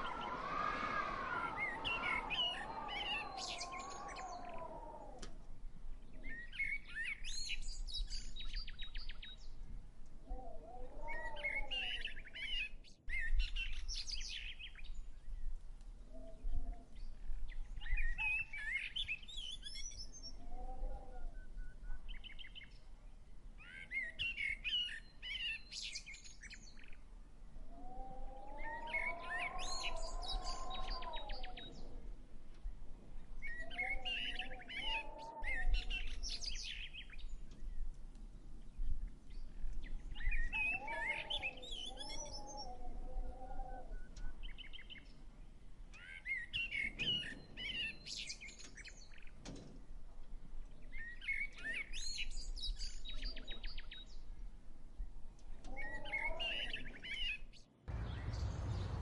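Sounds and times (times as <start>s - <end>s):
low drawn-out bird call: 0.0s - 5.3s, 27.7s - 31.9s, 33.4s - 36.9s, 40.2s - 44.9s, 55.6s - 59.0s
songbirds chirping and trilling: 0.0s - 59.0s.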